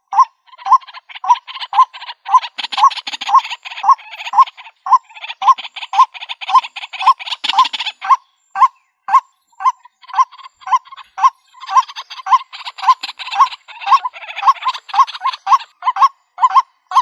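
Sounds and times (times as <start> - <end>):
bird croaking call: 0.0 - 17.0
bird rapid chattering: 0.1 - 17.0.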